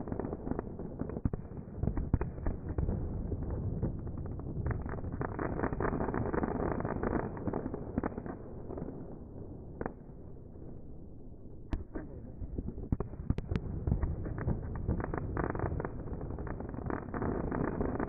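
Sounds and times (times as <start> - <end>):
fireworks crackling: 0.0 - 10.4, 11.6 - 18.0
sharp firework cracks: 11.7 - 18.0.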